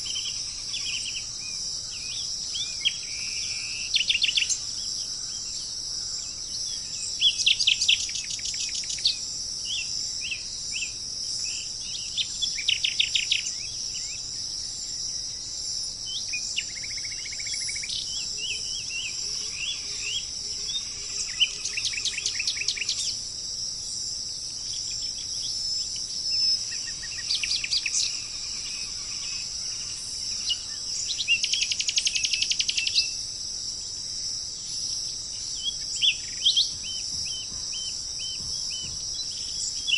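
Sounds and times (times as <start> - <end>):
high-pitched insect chorus: 0.0 - 39.9
songbirds trilling: 0.0 - 39.9.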